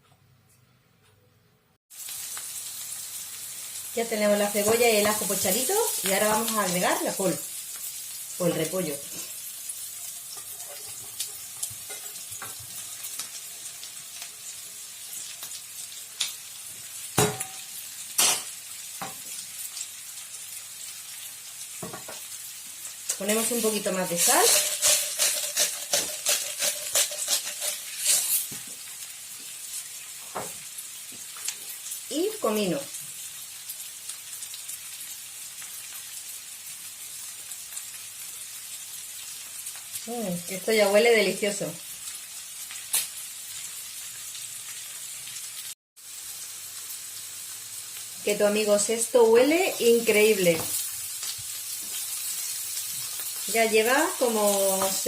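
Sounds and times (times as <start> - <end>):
cabbage sizzling in a pan: 1.9 - 55.0
knocks against a pan: 17.2 - 17.6.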